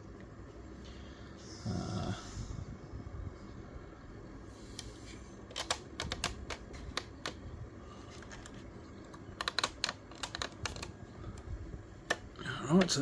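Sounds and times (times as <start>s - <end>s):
model car clicking and tapping: 9.2s - 10.9s.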